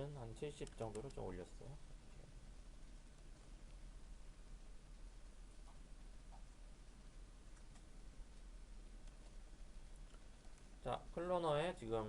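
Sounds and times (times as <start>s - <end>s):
soft mouse clicks: 0.6s - 1.3s, 5.6s - 6.5s, 7.5s - 9.4s.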